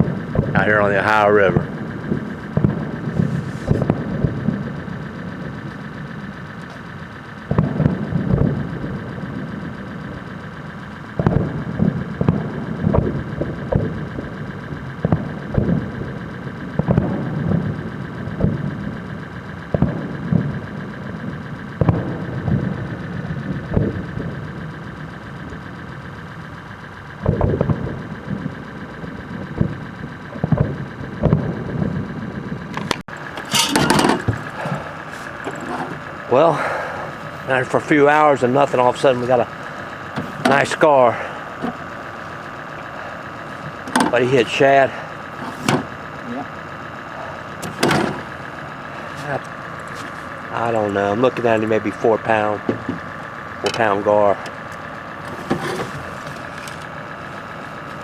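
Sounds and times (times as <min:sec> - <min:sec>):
fireworks bangs and crackles: 0:00.0 - 0:10.0, 0:10.9 - 0:14.4, 0:19.7 - 0:24.4, 0:27.2 - 0:33.0
steady hum: 0:00.0 - 0:58.0.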